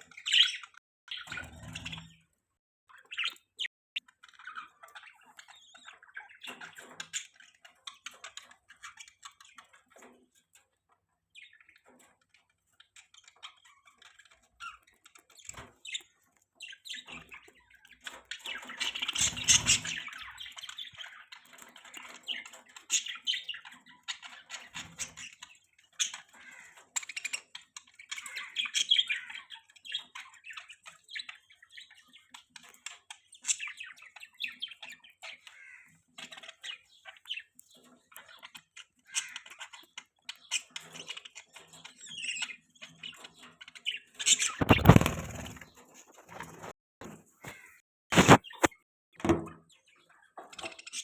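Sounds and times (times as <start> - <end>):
budgerigars chirping and chattering: 0.0 - 2.2, 2.9 - 10.7, 11.3 - 45.8, 49.7 - 51.0
thump or flutter: 44.6 - 45.6.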